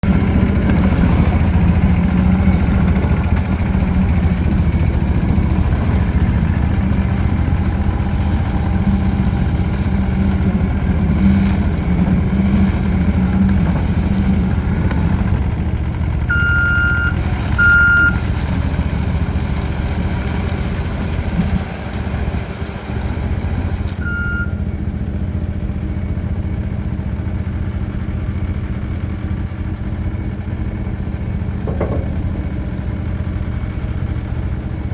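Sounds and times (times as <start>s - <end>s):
diesel engine running: 0.0s - 34.9s
short high alarm beeps: 16.3s - 18.2s, 24.0s - 24.6s.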